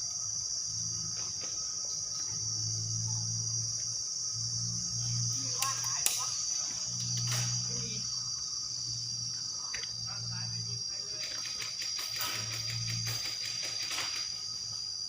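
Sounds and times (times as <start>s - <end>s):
high-pitched insect chorus: 0.0s - 15.0s
sharp clicks: 5.6s - 6.3s, 11.1s - 14.4s.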